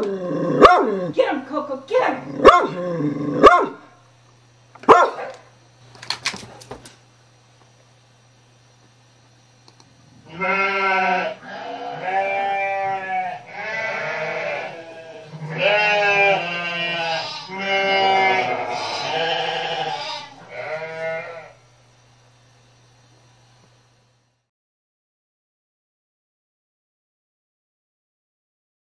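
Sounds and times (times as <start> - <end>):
animal bleating: 10.2 - 21.6.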